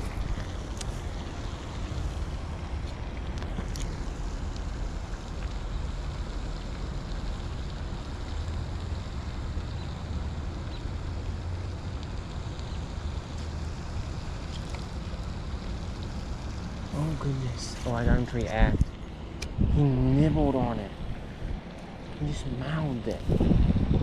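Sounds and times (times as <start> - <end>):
wind buffeting microphone: 16.0 - 24.0.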